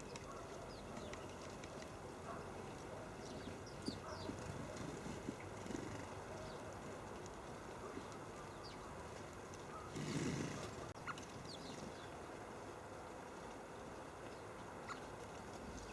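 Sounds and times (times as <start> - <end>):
birds chirping: 0.0 - 12.4.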